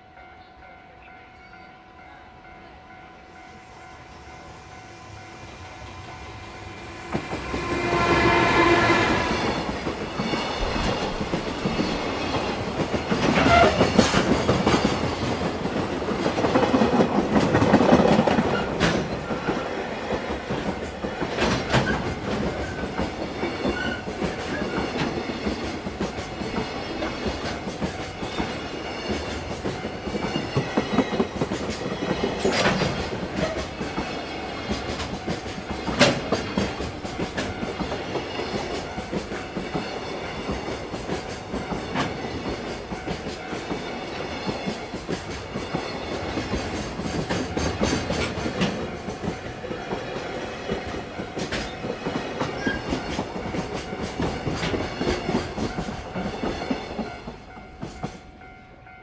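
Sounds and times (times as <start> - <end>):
train rumble passing: 2.5 - 59.0
train horn: 3.4 - 9.7, 13.4 - 13.9.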